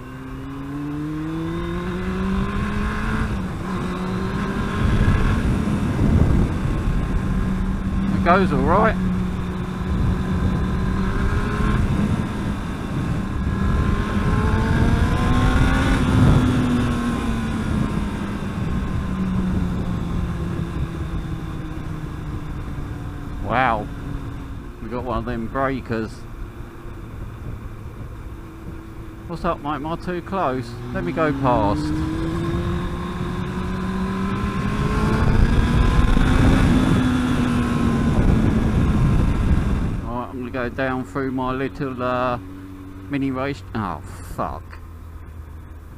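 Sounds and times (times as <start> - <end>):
motorcycle engine revving: 0.0 - 45.9
wind rush: 1.3 - 24.8, 30.7 - 40.3.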